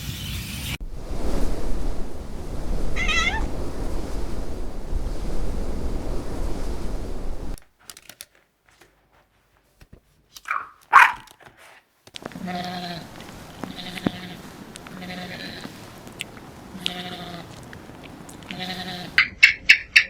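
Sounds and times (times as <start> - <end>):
outdoor rustling: 0.8 - 7.7, 12.1 - 19.2
domestic animal calls: 12.4 - 19.2.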